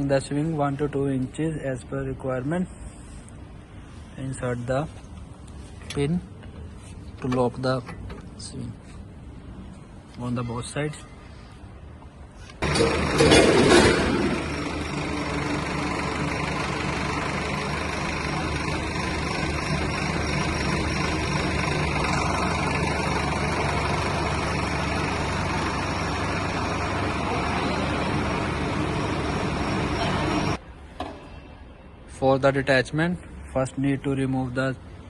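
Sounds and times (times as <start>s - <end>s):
tractor engine running: 12.6s - 30.6s.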